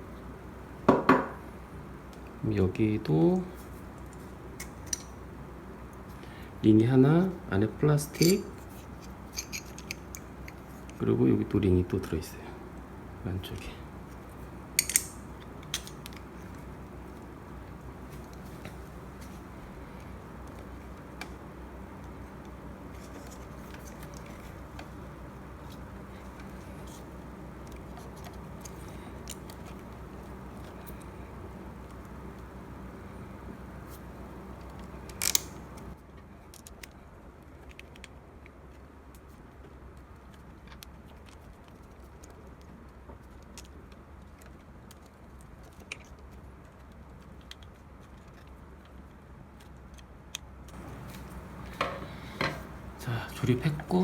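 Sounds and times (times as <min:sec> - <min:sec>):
steady low hum: 0:00.0 - 0:36.0, 0:50.7 - 0:54.0
clicks and rattling of metal parts: 0:09.3 - 0:11.0, 0:14.8 - 0:16.2.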